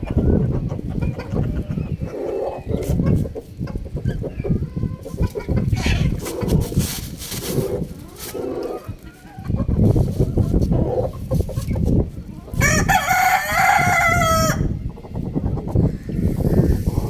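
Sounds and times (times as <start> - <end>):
rooster crowing: 12.6 - 14.7.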